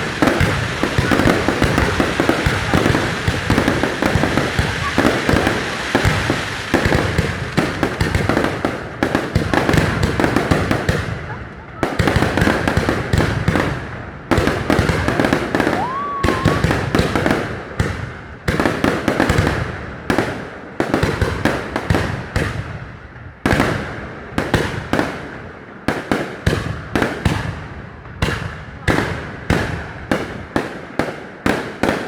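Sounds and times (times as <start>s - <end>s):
rising firework whistle: 0.0s - 7.5s, 15.0s - 17.0s
fireworks bursting with bangs: 0.0s - 32.0s.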